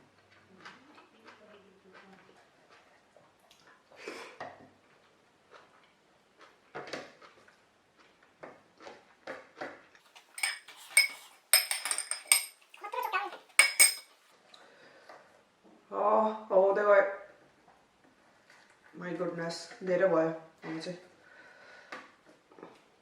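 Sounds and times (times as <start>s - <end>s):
eating and chewing: 0.0s - 11.5s, 17.5s - 19.0s, 22.0s - 23.0s
metal dishes and cutlery clinking: 10.3s - 14.1s.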